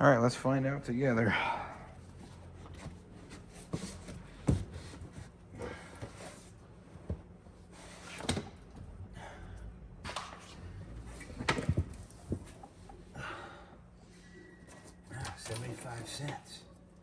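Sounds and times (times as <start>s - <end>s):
hard parts knocking and clunking: 11.2s - 13.0s.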